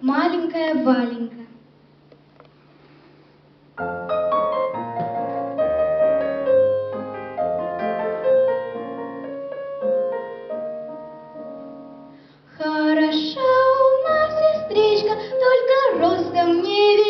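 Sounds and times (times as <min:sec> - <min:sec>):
piano playing chords: 0:03.7 - 0:12.2.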